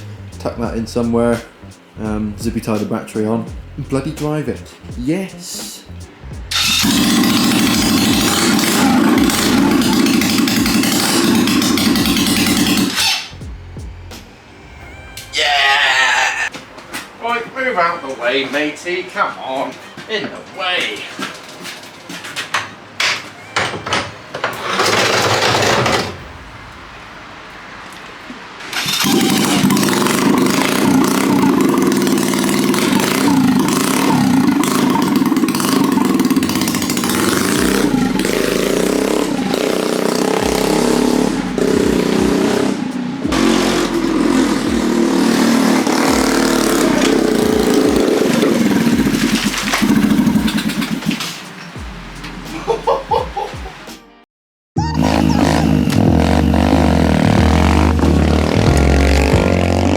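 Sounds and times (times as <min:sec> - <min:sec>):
electric kart motors under load: 0:06.5 - 0:13.4, 0:23.8 - 0:26.5, 0:28.6 - 0:52.4, 0:54.9 - 0:59.9.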